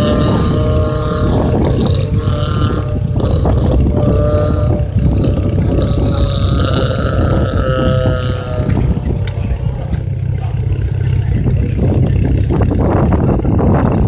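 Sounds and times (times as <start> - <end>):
rally car engine running hard: 0.0 - 14.0.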